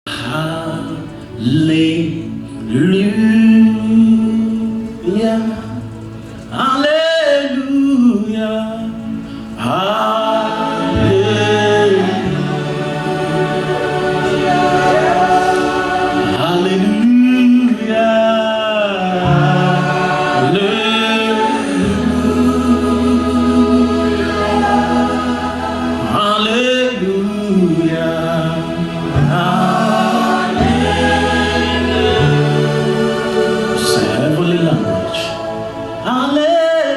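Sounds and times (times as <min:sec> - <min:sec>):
voices singing together: 0:00.1 - 0:36.9
keyboard and bass chords: 0:07.6 - 0:36.9.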